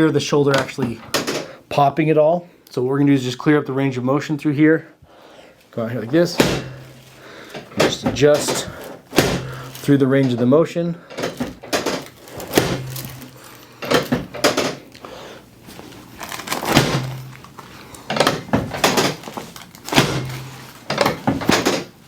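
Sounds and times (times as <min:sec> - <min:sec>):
drop table thunks: 0:06.4 - 0:09.9, 0:11.2 - 0:14.8, 0:16.6 - 0:17.4, 0:19.9 - 0:21.9.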